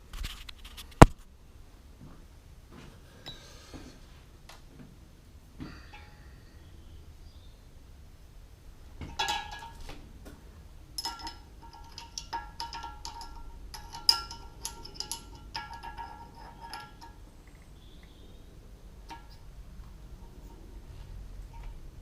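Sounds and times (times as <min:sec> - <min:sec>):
metal parts clinking and ringing: 0:11.0 - 0:17.2.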